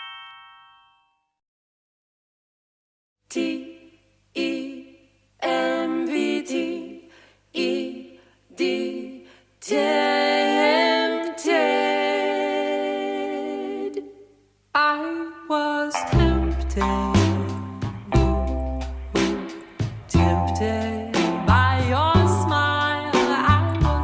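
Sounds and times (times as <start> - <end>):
solo voice singing unaccompanied: 14.8 - 19.3, 20.1 - 24.0.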